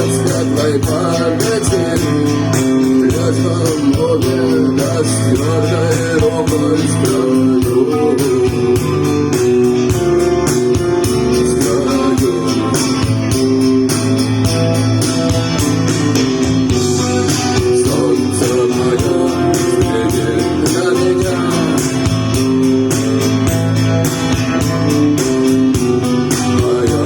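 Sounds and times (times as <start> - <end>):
bass: 0.0 - 27.0
melodic guitar line: 0.0 - 27.0
steady beat: 0.0 - 27.0.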